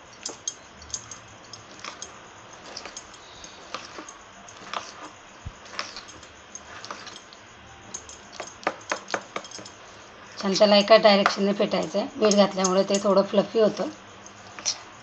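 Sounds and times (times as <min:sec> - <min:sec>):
batter being beaten in a bowl: 0:07.9 - 0:09.8.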